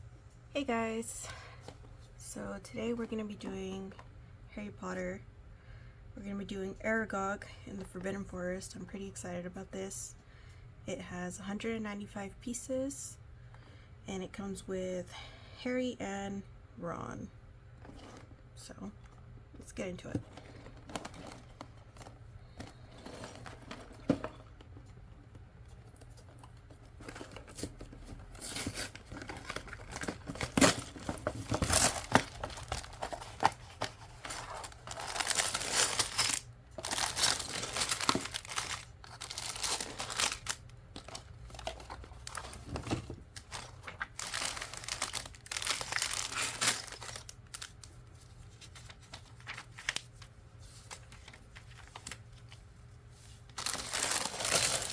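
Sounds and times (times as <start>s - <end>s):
packaging crinkling and tearing: 25.8s - 48.0s, 50.9s - 52.4s, 53.5s - 54.9s.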